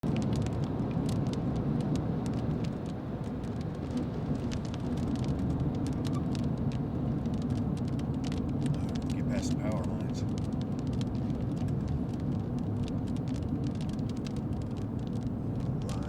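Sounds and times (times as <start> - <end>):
road and engine rumble: 0.0 - 16.0.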